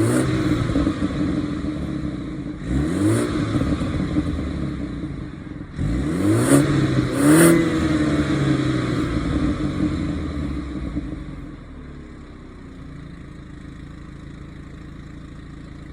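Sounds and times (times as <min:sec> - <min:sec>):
car engine revving and idling: 0:00.0 - 0:15.9.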